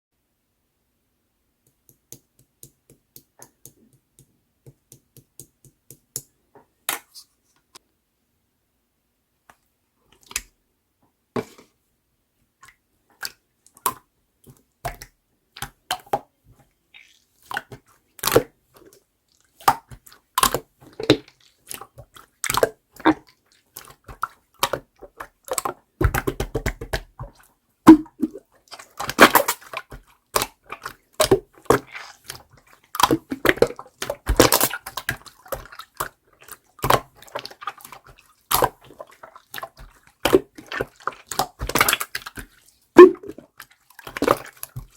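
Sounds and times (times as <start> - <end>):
air bubbles popping in slime: 27.9 - 28.4, 43.0 - 43.4
slime squished by hand: 27.9 - 36.1, 36.8 - 43.4.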